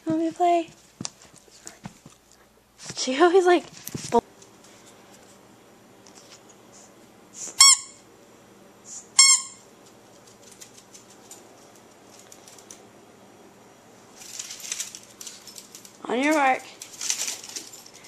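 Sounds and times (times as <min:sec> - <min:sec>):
squeaky dog toy squeaks: 0:07.6 - 0:08.0, 0:09.2 - 0:09.6.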